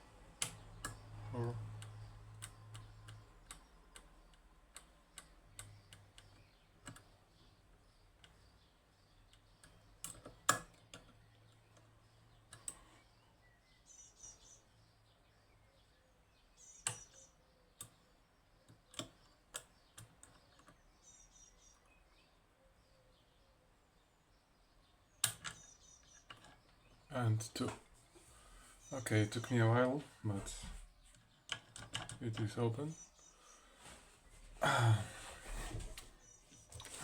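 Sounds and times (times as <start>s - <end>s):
lock picking metallic clicks: 25.2s - 25.7s.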